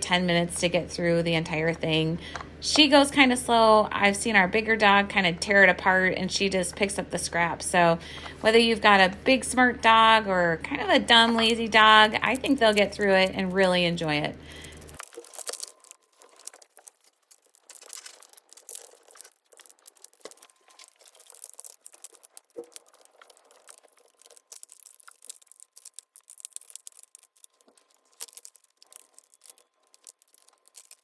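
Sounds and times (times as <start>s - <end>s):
crinkling and rustling: 0.0s - 31.0s
dog working at puzzle toy: 14.5s - 31.0s.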